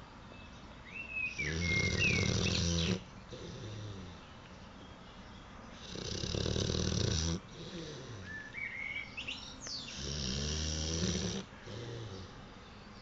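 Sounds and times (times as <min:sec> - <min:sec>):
dog snoring: 0:01.4 - 0:04.2, 0:05.8 - 0:08.4, 0:09.9 - 0:12.4.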